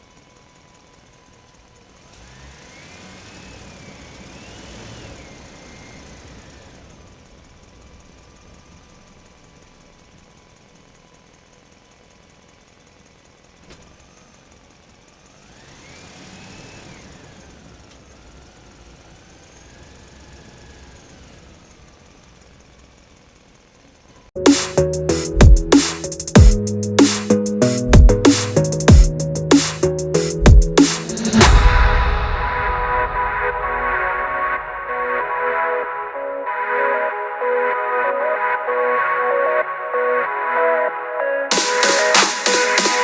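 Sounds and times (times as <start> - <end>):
small electric motors whining: 0.2 - 7.7, 13.9 - 21.9.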